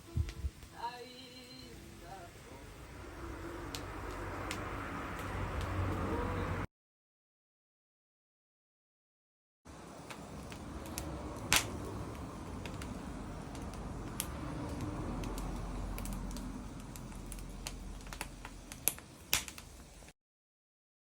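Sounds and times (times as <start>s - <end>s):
low rush of burning: 0.0s - 6.7s, 9.7s - 20.1s
wood fire crackling and popping: 1.4s - 6.7s, 9.7s - 20.1s.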